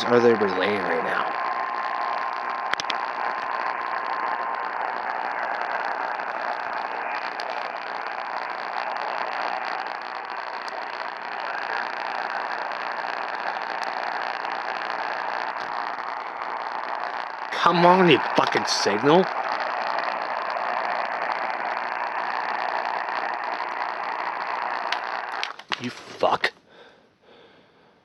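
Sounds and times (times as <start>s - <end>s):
radio static hiss: 0.0s - 26.6s
click: 2.7s - 3.0s.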